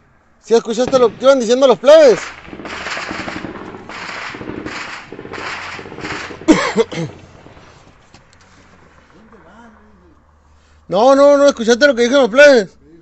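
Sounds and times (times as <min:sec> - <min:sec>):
man's loud voice: 0:00.5 - 0:02.3
automatic gunfire bursts: 0:00.9 - 0:07.7.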